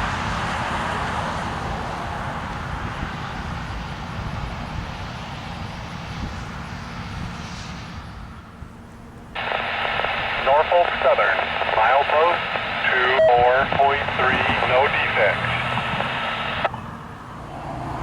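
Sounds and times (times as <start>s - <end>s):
passing vehicle rumble: 13.6s - 18.0s.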